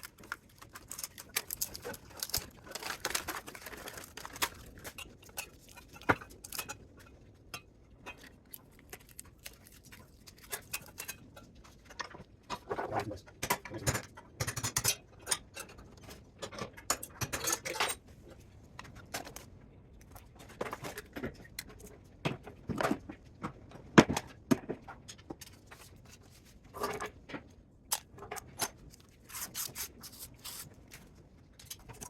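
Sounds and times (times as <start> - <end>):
metal tools clinking and scraping: 16.4 - 18.0.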